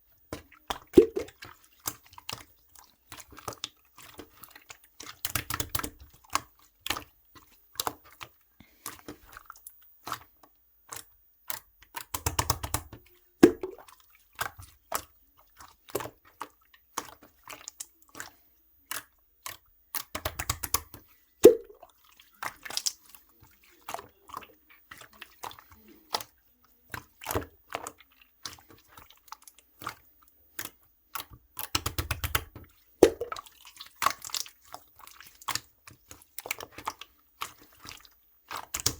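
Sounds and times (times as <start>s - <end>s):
slime squelching and popping: 0.4s - 2.5s, 10.9s - 15.1s, 18.9s - 26.3s, 26.9s - 38.9s.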